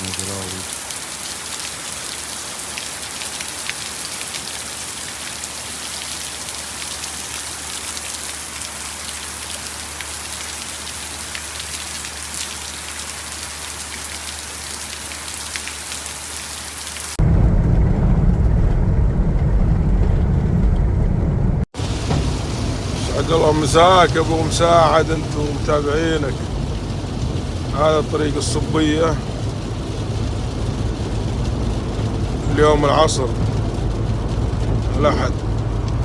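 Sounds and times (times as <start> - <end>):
steady rain falling: 0.0 - 36.0
low rumble: 17.2 - 21.7.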